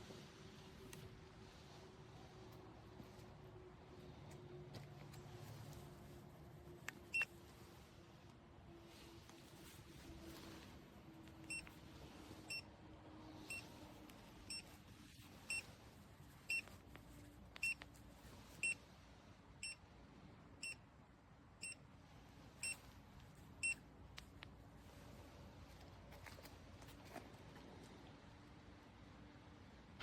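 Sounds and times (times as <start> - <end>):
scooter turn signal beeping: 17.6 - 17.8.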